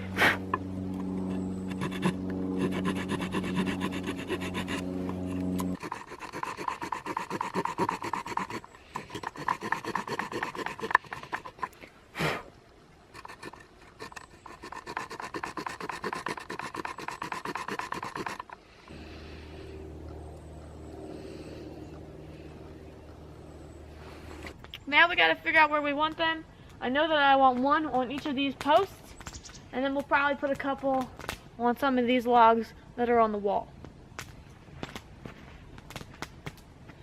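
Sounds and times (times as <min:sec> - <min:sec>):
engine hum: 0:00.0 - 0:11.9, 0:13.1 - 0:24.8
knife carving wood: 0:01.3 - 0:11.9, 0:13.1 - 0:18.6.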